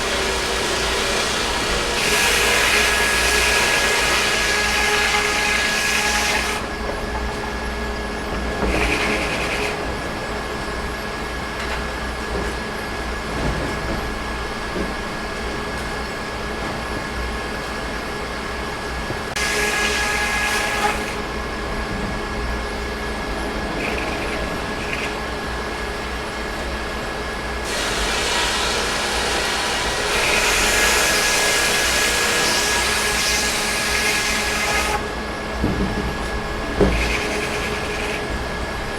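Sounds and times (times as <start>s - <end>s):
sawmill machinery running: 0.0s - 38.9s.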